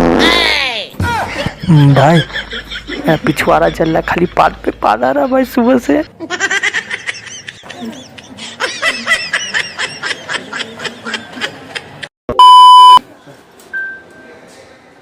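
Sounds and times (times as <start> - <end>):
electronic beep: 12.3 - 13.0.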